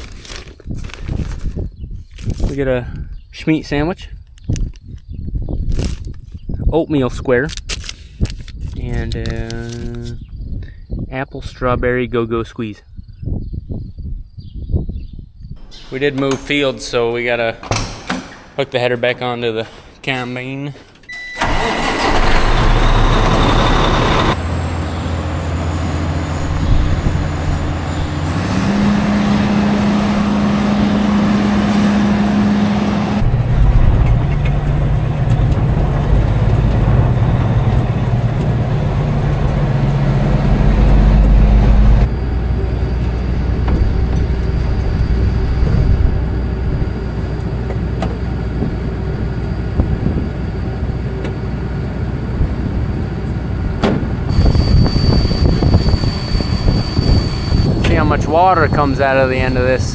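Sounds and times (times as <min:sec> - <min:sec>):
diesel engine running: 0:21.4 - 0:59.9.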